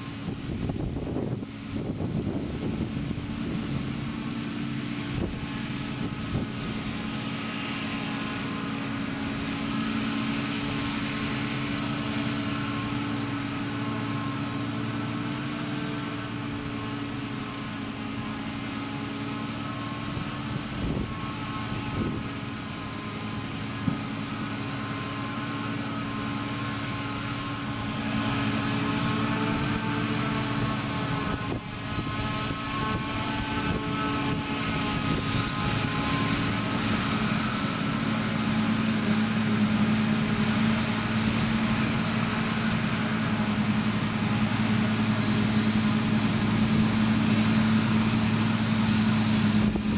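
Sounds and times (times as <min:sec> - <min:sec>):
diesel machinery engine drone: 0:00.0 - 0:49.9.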